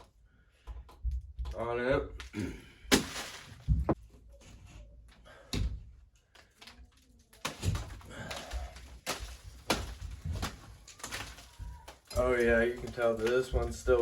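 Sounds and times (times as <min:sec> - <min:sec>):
knocks and thumps on drywall: 0:09.0 - 0:14.0.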